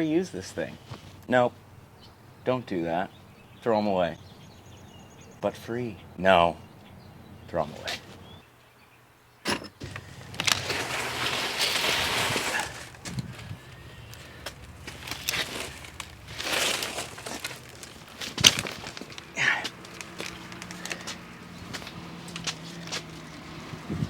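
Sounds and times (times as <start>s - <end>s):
knocks and clanks: 9.5s - 10.7s
scraping or rustling: 9.5s - 23.1s.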